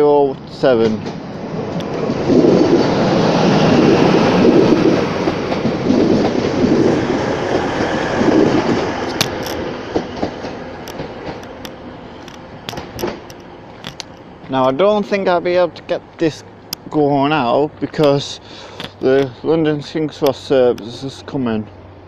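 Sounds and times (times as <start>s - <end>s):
train wheels and engine rumbling: 0.0s - 22.0s
sharp clicks: 9.1s - 14.3s.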